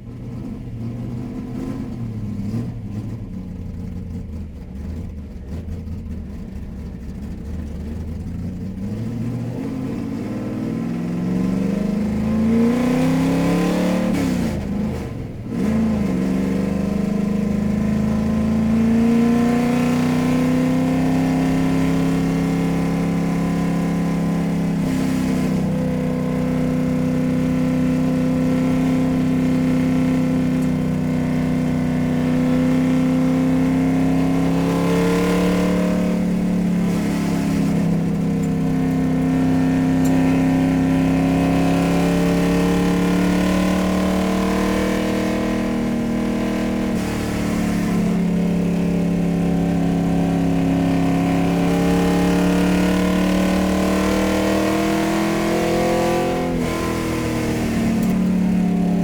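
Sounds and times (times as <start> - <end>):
car engine revving: 0.0 - 59.0.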